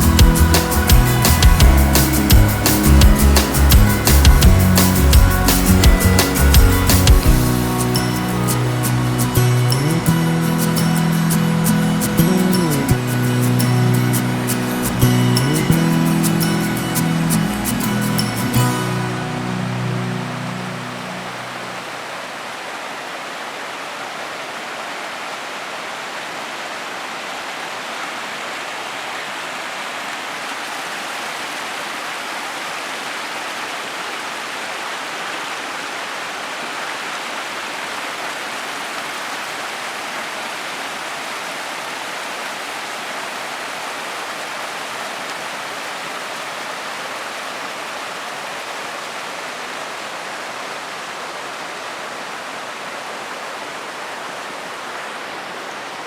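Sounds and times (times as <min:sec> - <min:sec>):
stream water rushing: 0:00.0 - 0:56.0.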